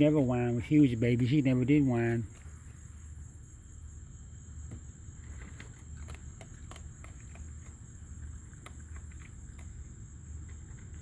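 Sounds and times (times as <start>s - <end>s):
raccoon crunching nuts: 4.7s - 11.0s.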